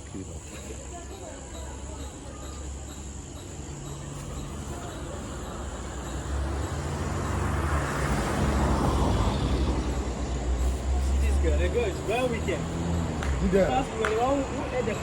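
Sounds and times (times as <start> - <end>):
insects chirring: 0.0 - 15.0
vehicle driving past: 5.4 - 15.0.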